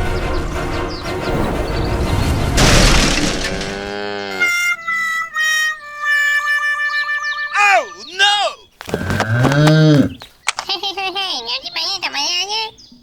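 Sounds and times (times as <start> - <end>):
crash sound effect: 2.1 - 3.9.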